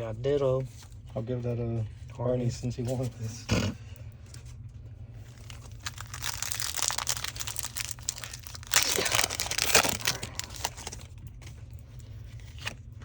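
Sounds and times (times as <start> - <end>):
foil wrapper tearing and crinkling: 5.2 - 11.2.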